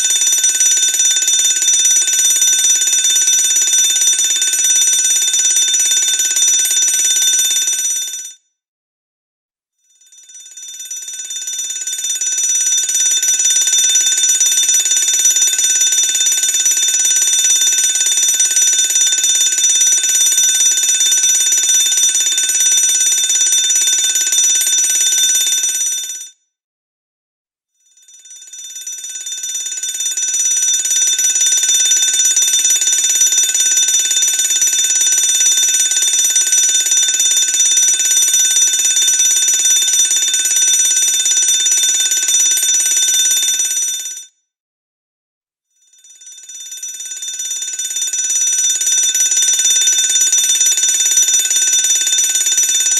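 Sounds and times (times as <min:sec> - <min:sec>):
fire alarm bell ringing: 0:12.8 - 0:25.8, 0:28.2 - 0:43.8, 0:46.0 - 0:52.9.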